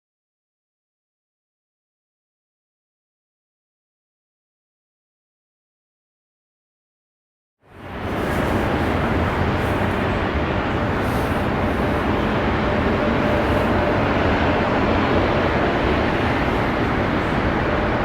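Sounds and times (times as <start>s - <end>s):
jet engines roaring: 7.8s - 18.0s.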